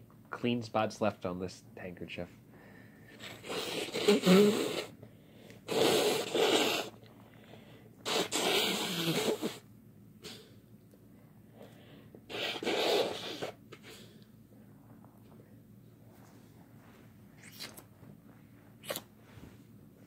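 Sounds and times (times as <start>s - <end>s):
person sneezing and blowing nose: 3.1s - 5.0s, 5.6s - 7.0s, 8.0s - 10.6s, 12.2s - 14.2s, 18.8s - 19.1s.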